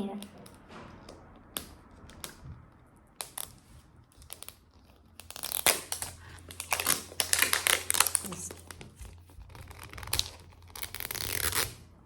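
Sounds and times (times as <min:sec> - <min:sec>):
plastic wrapping crinkling: 0:03.2 - 0:11.8.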